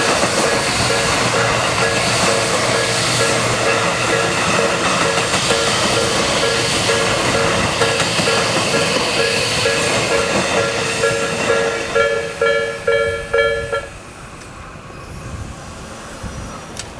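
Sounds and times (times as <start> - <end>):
passing train rushing: 0.0 - 16.9
level crossing bell dinging: 3.2 - 13.9.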